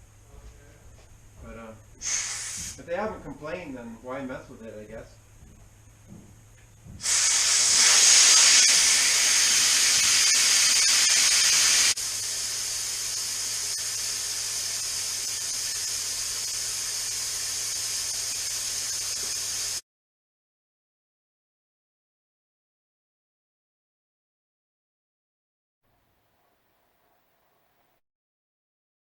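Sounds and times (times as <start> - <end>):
compressed air hissing: 2.0 - 3.0, 6.9 - 19.8.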